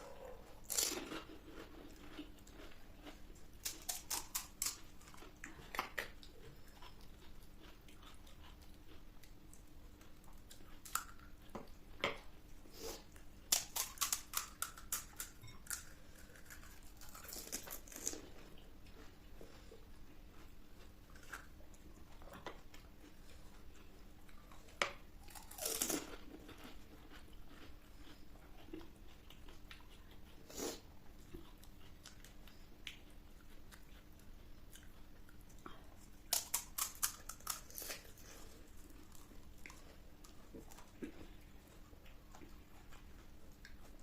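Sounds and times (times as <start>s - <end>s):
crisp food crunching: 0.6s - 9.4s, 13.4s - 18.4s, 23.7s - 30.0s, 36.3s - 41.4s.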